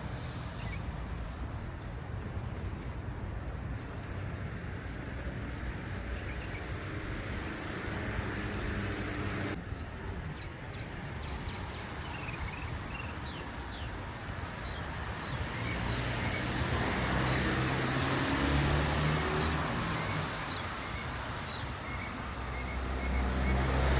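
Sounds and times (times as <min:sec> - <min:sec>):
car engine running: 0:07.9 - 0:09.6.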